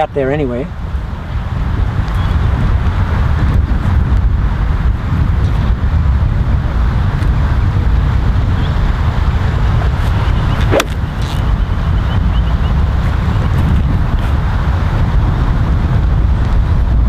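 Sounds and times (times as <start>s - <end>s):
wind buffeting microphone: 0.0s - 17.0s
golf club striking ball: 10.6s - 11.0s.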